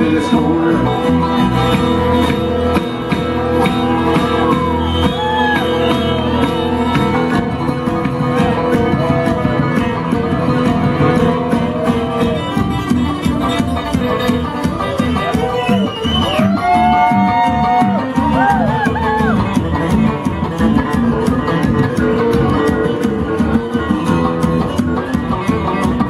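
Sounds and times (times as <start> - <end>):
bluegrass band playing: 0.0 - 26.0.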